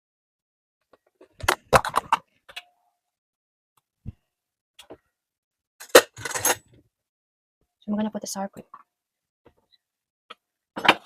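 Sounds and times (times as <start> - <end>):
kitchen utensils clicking and knocking: 5.8 - 6.8.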